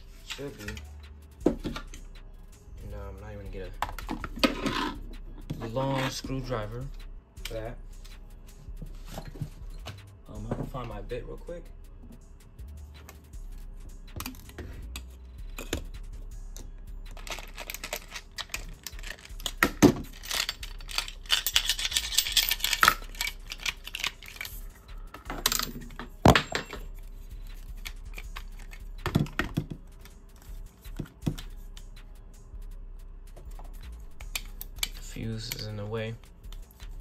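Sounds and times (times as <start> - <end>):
dense rattle of tools: 17.2 - 24.5
tools clicking and clattering: 17.2 - 27.0.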